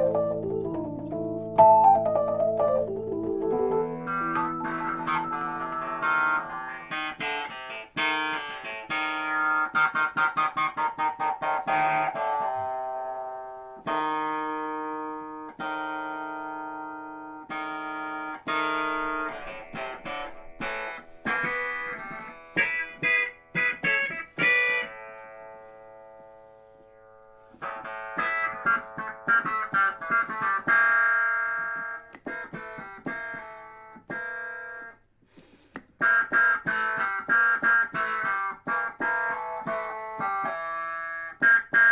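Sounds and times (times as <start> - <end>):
electric keyboard chords and runs: 0.0 - 25.3.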